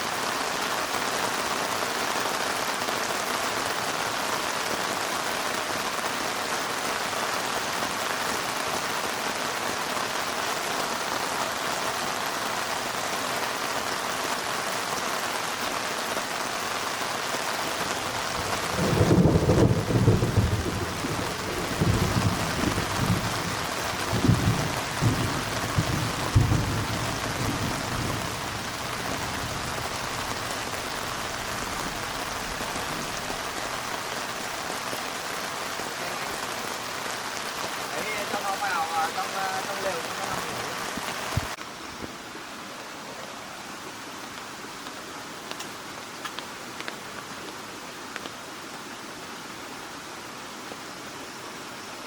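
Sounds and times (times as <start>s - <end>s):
heavy rain: 0.0s - 52.0s
thunder rumbling: 18.2s - 33.8s.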